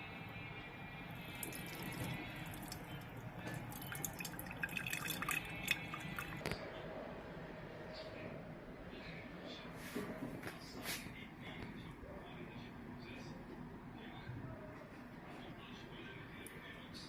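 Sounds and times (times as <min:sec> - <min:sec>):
juice dripping through a strainer: 0:01.1 - 0:06.6.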